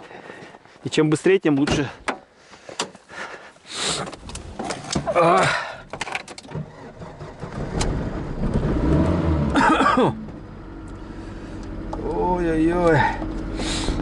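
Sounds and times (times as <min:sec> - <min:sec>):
vehicle engine running: 0:07.3 - 0:14.0.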